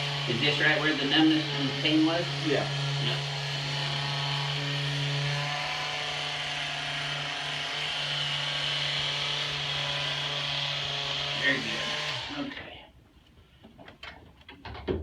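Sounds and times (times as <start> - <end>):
vibration massager buzzing: 0.0 - 6.1.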